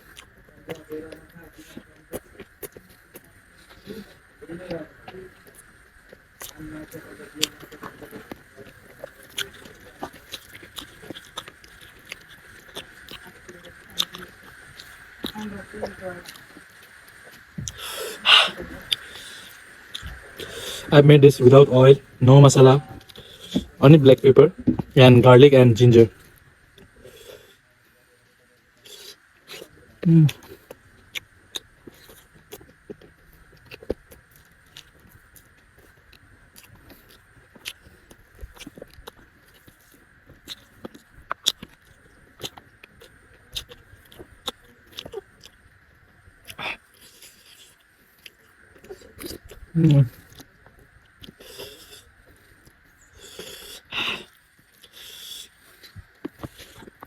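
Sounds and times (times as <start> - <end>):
close chewing with mouth smacks: 0.0 - 20.9, 28.8 - 57.0.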